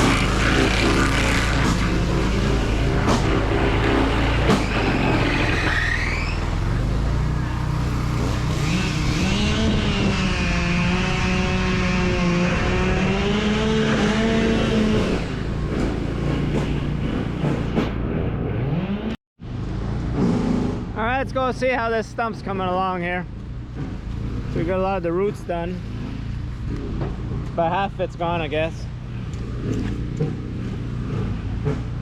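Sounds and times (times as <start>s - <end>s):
stump grinder engine grinding: 0.0s - 9.8s.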